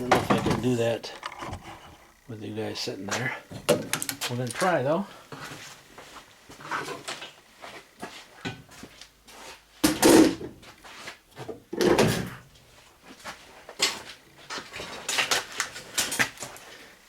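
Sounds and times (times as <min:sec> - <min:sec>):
fridge scraping and clunking: 0:00.0 - 0:02.1.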